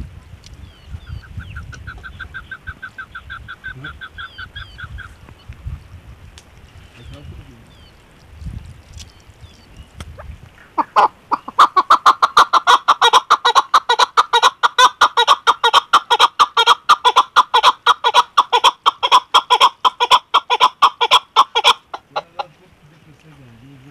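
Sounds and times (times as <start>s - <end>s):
partridge clucking calls: 0.6s - 5.7s, 9.6s - 23.3s.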